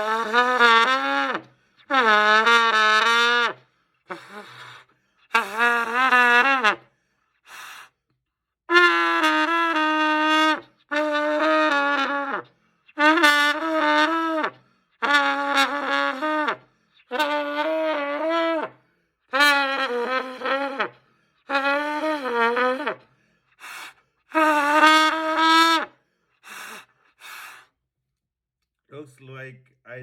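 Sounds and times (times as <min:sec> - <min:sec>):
trumpet long notes: 0:00.0 - 0:04.2, 0:05.3 - 0:06.8, 0:08.7 - 0:23.0, 0:24.3 - 0:25.9.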